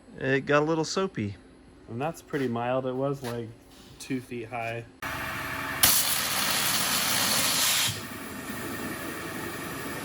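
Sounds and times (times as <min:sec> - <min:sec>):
machine running noise: 0:05.0 - 0:10.0
waterjet stream hissing: 0:05.9 - 0:08.1.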